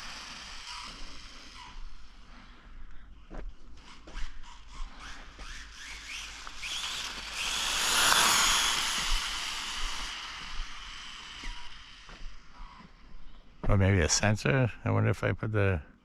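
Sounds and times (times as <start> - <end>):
rc car motor whining: 0.0 - 2.7, 3.8 - 13.2.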